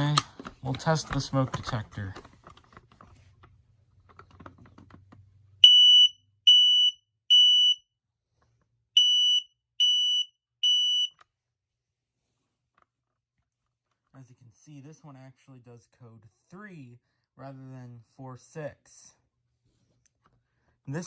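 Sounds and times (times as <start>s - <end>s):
smoke alarm high-pitched beeps: 5.6s - 7.9s, 9.0s - 11.1s.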